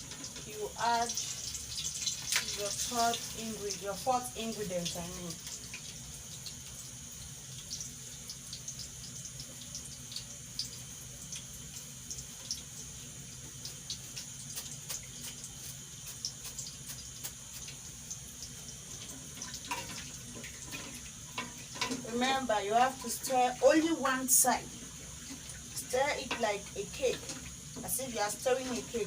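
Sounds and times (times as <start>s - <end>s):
gas burner hissing: 0.0s - 6.3s, 11.7s - 29.0s
spoon stirring a pot: 25.2s - 29.0s.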